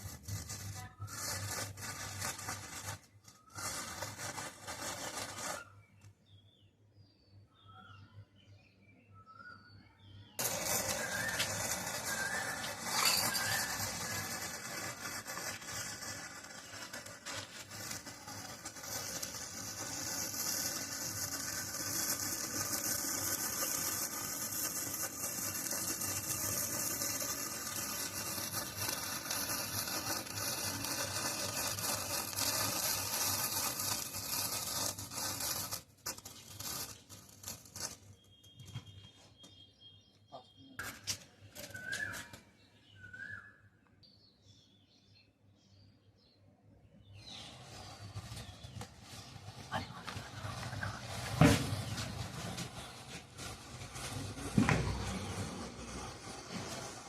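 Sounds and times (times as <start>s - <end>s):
birds chirping faintly: 36.1s - 55.0s.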